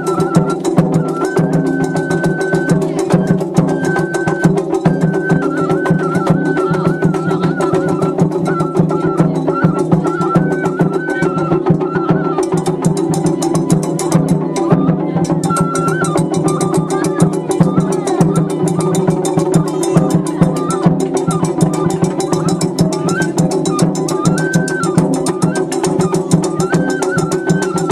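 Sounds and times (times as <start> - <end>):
festival drums: 0.0 - 27.9
high melody: 0.0 - 27.9.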